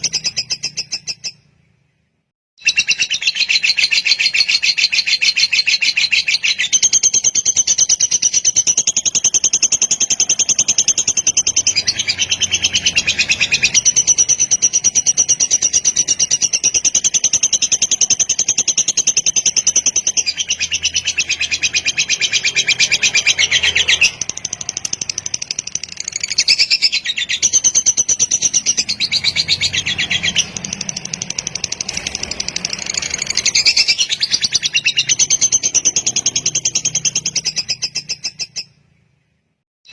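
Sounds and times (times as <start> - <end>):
bird singing fast chattering trill: 0.0 - 1.4, 2.6 - 38.8.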